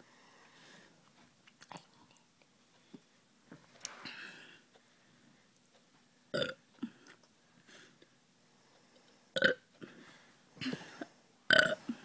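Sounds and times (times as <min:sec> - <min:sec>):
person burping: 0:06.4 - 0:07.0, 0:09.4 - 0:09.6, 0:10.6 - 0:12.0.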